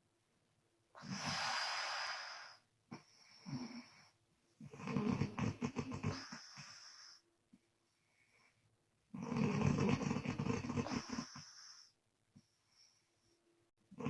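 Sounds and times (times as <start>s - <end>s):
woman snoring: 3.2s - 7.2s, 9.2s - 11.9s.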